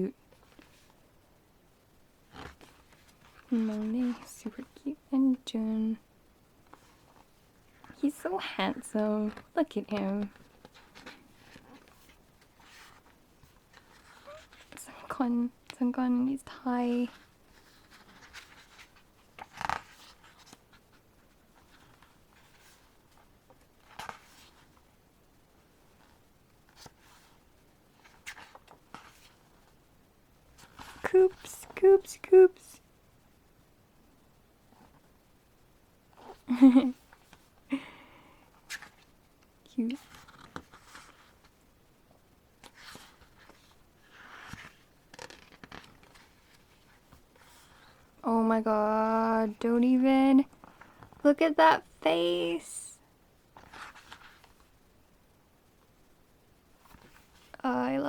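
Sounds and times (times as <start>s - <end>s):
loud page flips: 2.3s - 4.2s, 17.1s - 21.0s, 21.6s - 24.8s, 28.0s - 29.7s, 38.6s - 39.1s, 40.0s - 41.5s, 42.6s - 48.0s, 53.6s - 54.7s
pages turning: 2.3s - 4.8s, 9.2s - 14.8s, 17.0s - 24.8s, 25.9s - 29.8s, 30.5s - 31.8s, 38.5s - 39.1s, 39.9s - 41.6s, 42.6s - 48.1s, 53.6s - 54.7s, 56.8s - 57.6s.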